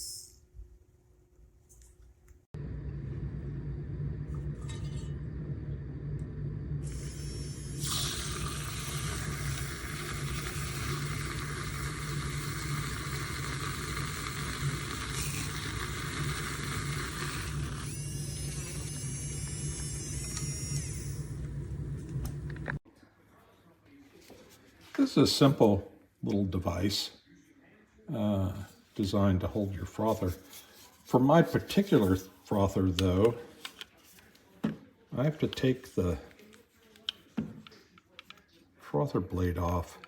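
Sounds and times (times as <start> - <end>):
milk frother motor humming: 2.6 - 22.8
wavering whine: 2.6 - 22.8
whisk churning liquid: 7.7 - 18.9.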